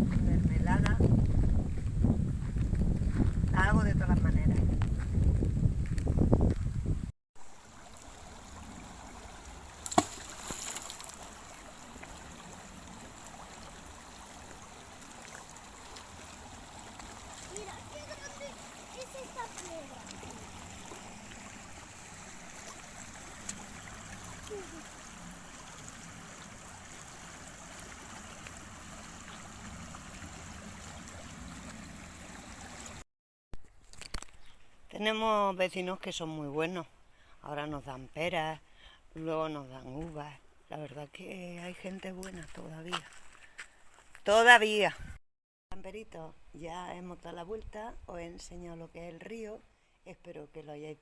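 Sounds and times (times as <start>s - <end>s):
river water flowing: 7.4s - 33.0s.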